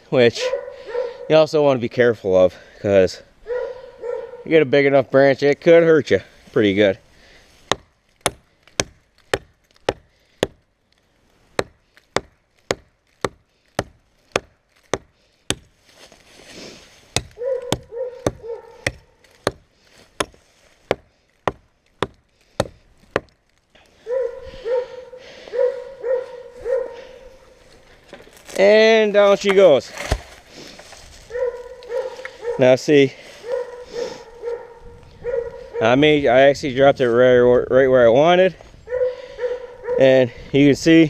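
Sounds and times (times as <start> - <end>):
hatchet chopping tree trunk: 7.6 - 10.7, 11.5 - 15.8, 17.1 - 23.6, 29.4 - 30.5.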